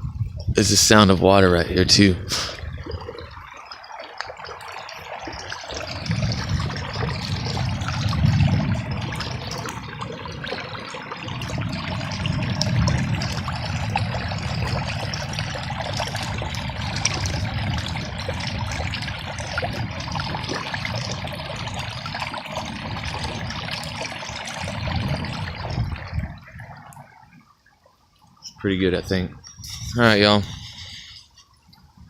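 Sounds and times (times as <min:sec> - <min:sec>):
low rumbles: 0:00.0 - 0:27.2
water running and trickling: 0:00.0 - 0:32.0
steady rain: 0:05.6 - 0:21.0.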